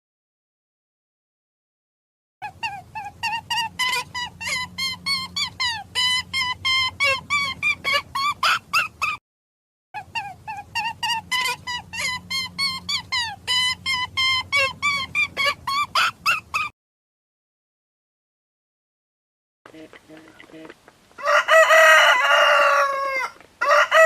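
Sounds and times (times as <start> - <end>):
faint low hum: 2.4 - 9.2, 10.0 - 16.7.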